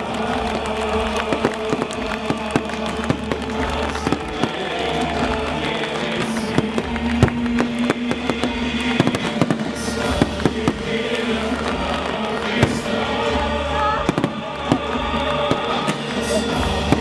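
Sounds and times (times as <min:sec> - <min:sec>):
fireworks bangs and cracks: 0:00.0 - 0:17.0
loud music through speakers: 0:00.0 - 0:17.0.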